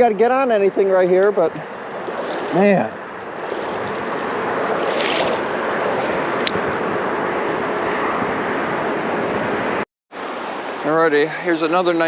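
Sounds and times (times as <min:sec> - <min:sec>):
highway traffic noise: 0:00.0 - 0:12.0
creek water rushing: 0:00.7 - 0:07.3, 0:10.2 - 0:12.0.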